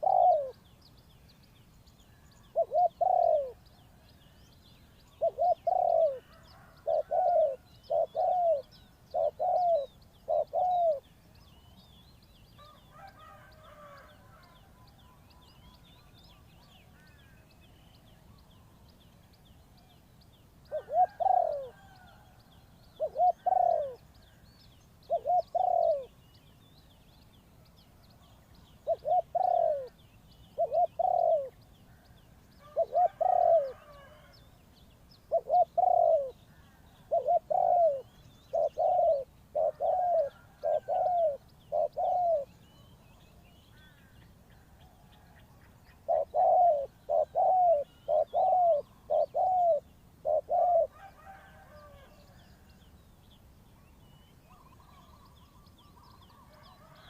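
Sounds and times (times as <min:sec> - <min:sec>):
dove cooing: 0:00.0 - 0:00.6, 0:02.4 - 0:03.7, 0:05.2 - 0:11.1, 0:20.7 - 0:22.2, 0:23.0 - 0:24.1, 0:25.1 - 0:26.2, 0:28.8 - 0:30.0, 0:30.6 - 0:31.6, 0:32.6 - 0:34.3, 0:35.3 - 0:42.6, 0:45.2 - 0:52.4
small birds chirping faintly: 0:00.0 - 0:57.0.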